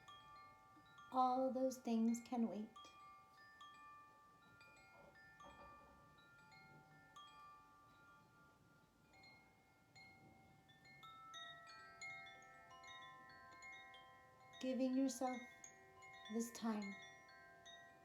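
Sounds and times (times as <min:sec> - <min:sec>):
chimes ringing softly: 0:00.0 - 0:18.0.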